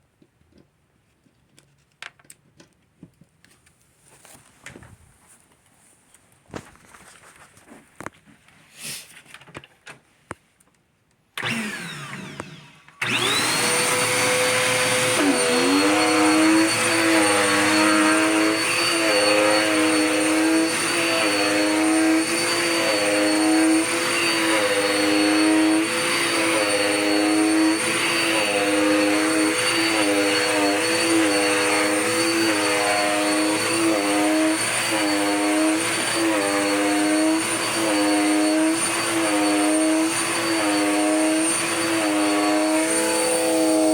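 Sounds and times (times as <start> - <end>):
vacuum cleaner motor whine: 11.4 - 43.9.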